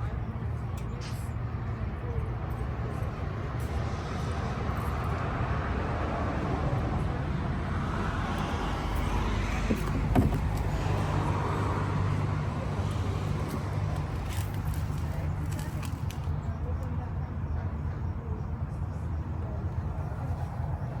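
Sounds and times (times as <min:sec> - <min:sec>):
car engine idling: 0:08.3 - 0:16.4, 0:19.2 - 0:21.0
short knocks: 0:09.5 - 0:11.0.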